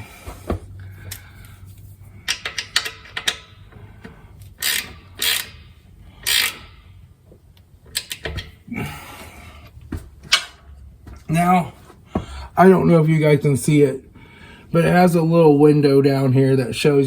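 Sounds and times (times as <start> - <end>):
wrench ratcheting: 2.2 - 3.7, 4.4 - 6.8.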